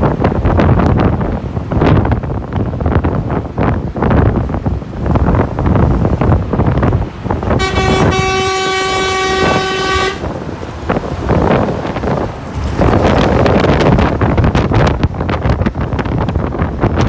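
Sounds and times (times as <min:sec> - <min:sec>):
wind buffeting microphone: 0:00.0 - 0:17.0
horn blast: 0:07.4 - 0:10.6.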